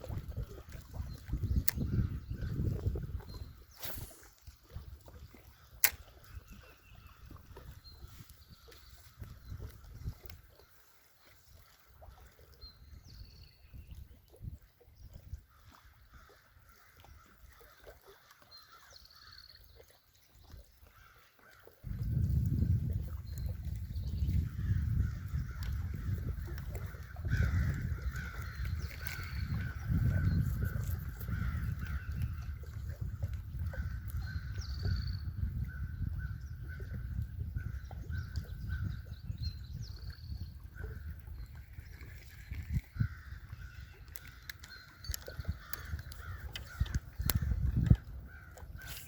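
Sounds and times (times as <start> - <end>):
wind buffeting microphone: 0.0 - 10.6, 21.8 - 49.0.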